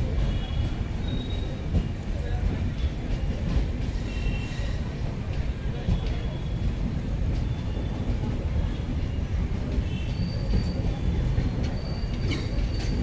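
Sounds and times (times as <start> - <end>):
train wheels rumbling on rail: 0.0 - 13.0
high-pitched wheel squeals: 0.3 - 1.6, 9.8 - 13.0.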